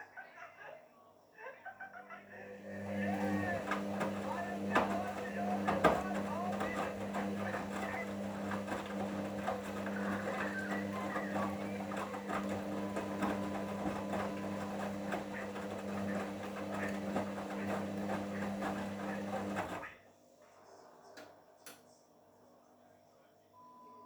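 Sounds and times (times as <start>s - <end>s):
washing machine drum motor humming: 2.5s - 19.8s.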